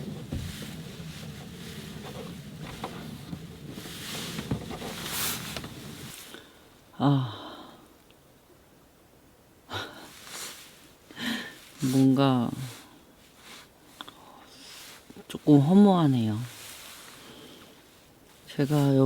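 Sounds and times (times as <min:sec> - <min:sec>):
woman sighing: 0:07.0 - 0:07.8.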